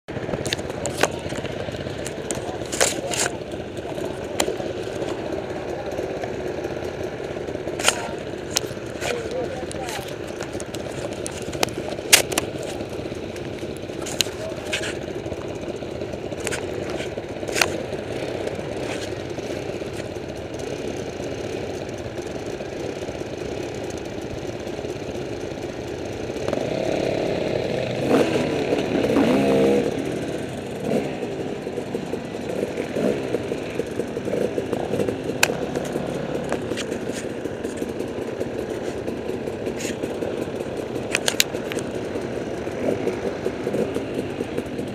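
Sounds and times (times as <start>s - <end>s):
motorcycle engine revving: 0.1s - 44.9s
motorcycle engines idling: 0.1s - 44.9s
sharp clicks and knocks: 0.2s - 5.2s, 7.8s - 15.1s, 34.0s - 44.9s.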